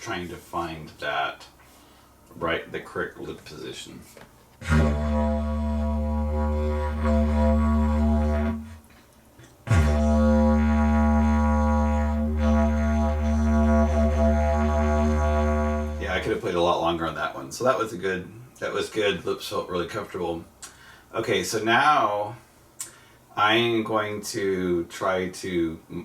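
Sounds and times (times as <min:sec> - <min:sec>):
didgeridoo drone: 0:04.6 - 0:08.7, 0:09.7 - 0:16.2.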